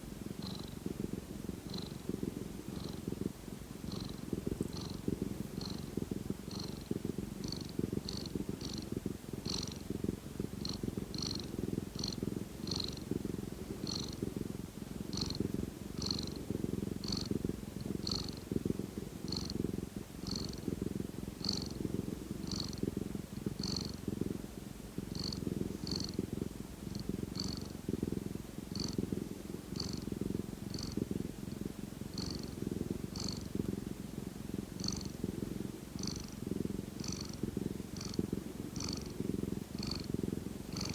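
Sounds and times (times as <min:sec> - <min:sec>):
cat purring: 0:00.0 - 0:40.9.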